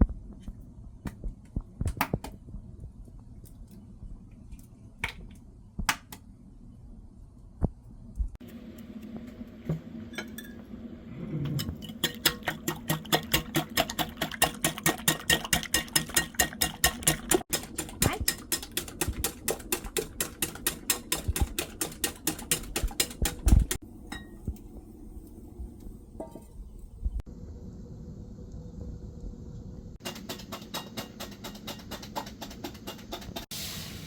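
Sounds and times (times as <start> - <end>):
low steady hum: 0.0 - 30.0.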